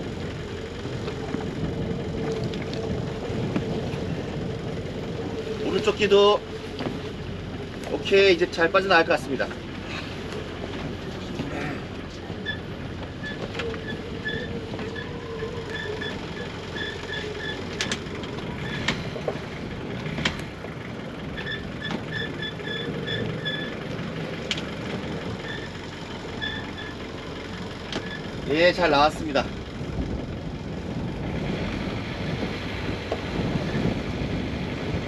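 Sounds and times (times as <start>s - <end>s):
boat engine running: 0.0s - 35.0s.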